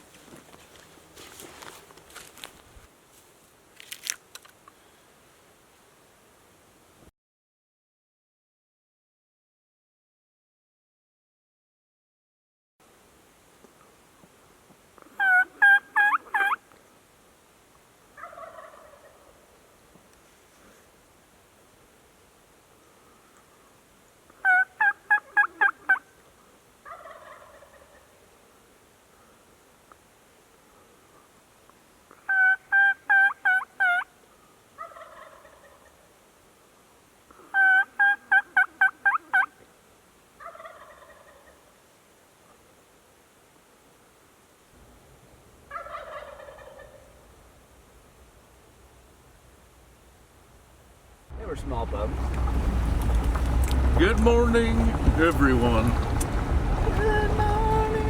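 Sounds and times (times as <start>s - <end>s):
turkey rough call: 15.1s - 16.6s, 18.2s - 19.4s, 24.4s - 26.1s, 26.8s - 28.2s, 32.2s - 36.0s, 37.3s - 39.6s, 40.4s - 41.7s, 45.7s - 47.2s
turkey yelping: 15.2s - 16.6s, 18.2s - 19.4s, 24.4s - 26.1s, 26.8s - 28.2s, 32.3s - 34.1s, 34.8s - 36.0s, 37.5s - 39.6s, 40.4s - 41.7s, 45.7s - 47.2s.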